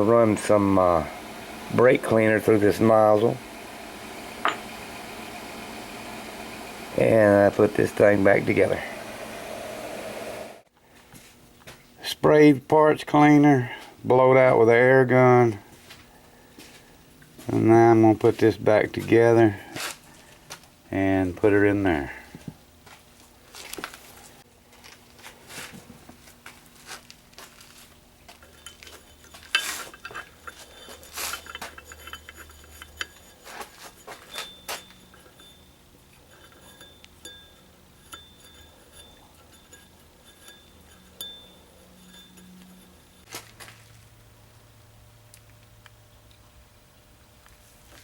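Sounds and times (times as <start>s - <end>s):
small metal parts clinking: 28.3s - 43.7s.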